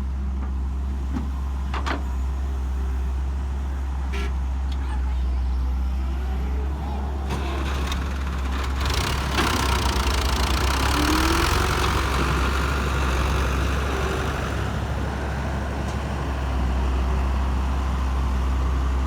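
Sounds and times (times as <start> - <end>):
excavator diesel engine running: 0.1 - 19.0.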